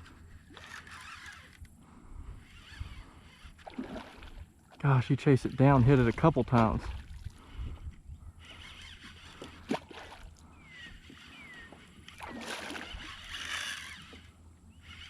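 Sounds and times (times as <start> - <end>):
water sloshing and splashing: 3.5 - 7.9, 9.0 - 10.4, 11.1 - 14.3.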